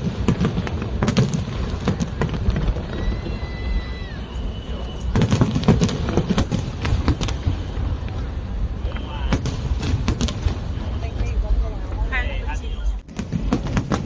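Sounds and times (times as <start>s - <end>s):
high firework whistle: 0.0s - 13.0s
crowd chatter: 0.0s - 14.0s
fireworks cracking and popping: 0.0s - 14.0s.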